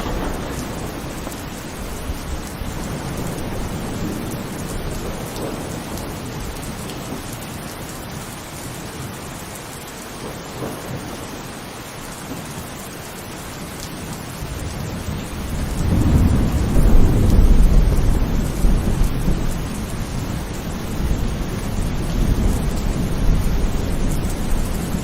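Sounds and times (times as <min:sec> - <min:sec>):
low rumble of thunder: 0:00.0 - 0:07.7, 0:14.4 - 0:25.0
heavy rain pouring: 0:00.0 - 0:25.0.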